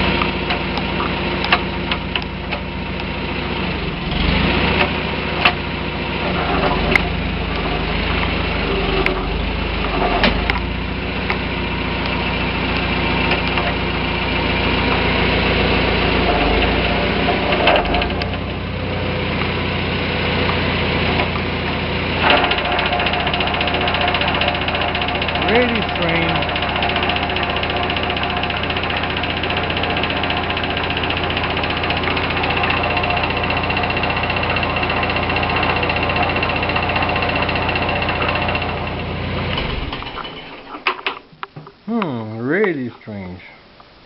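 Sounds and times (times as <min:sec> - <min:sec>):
tractor engine running: 0:00.0 - 0:44.0
sharp mechanical clicks and knocks: 0:00.2 - 0:03.1, 0:04.7 - 0:05.6, 0:06.3 - 0:13.8, 0:16.5 - 0:18.6, 0:22.2 - 0:38.8, 0:39.4 - 0:41.8.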